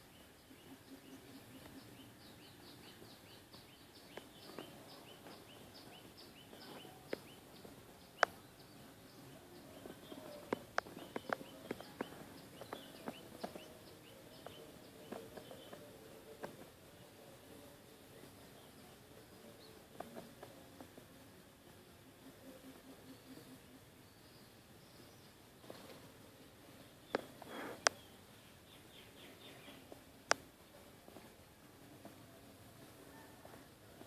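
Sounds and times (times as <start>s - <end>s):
small bird chirping: 0.0s - 20.7s.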